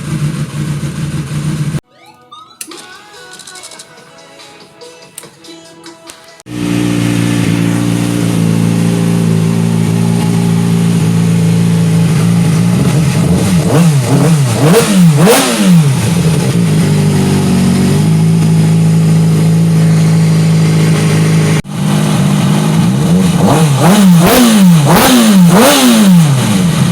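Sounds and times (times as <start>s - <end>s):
motorcycle engine idling: 6.5s - 14.5s, 15.8s - 23.5s
engine revving: 6.5s - 26.9s.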